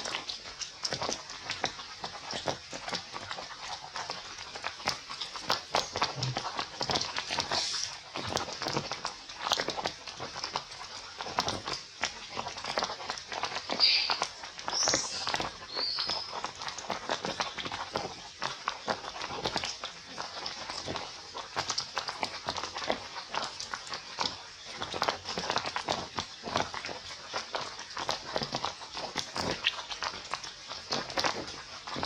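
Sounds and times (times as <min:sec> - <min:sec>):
patter of small taps and rustles: 0:00.0 - 0:32.0
baby monkey squealing: 0:13.7 - 0:16.2.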